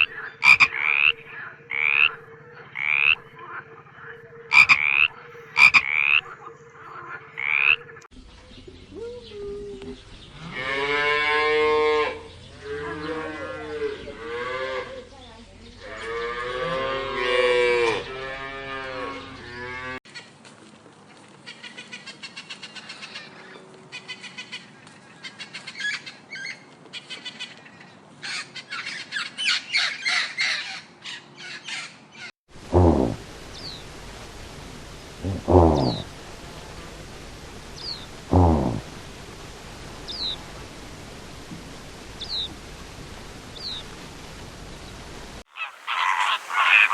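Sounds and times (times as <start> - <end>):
animal rapid pulsing calls: 0.0 - 8.0, 45.5 - 46.9
livestock long wavering calls: 0.0 - 8.1, 45.5 - 46.9.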